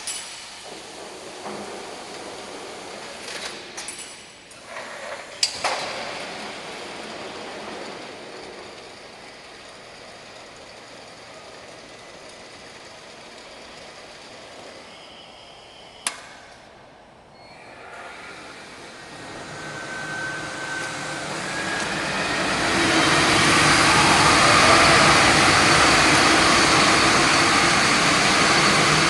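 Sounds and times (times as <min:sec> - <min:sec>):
packaging machine whirring: 0:17.6 - 0:29.0.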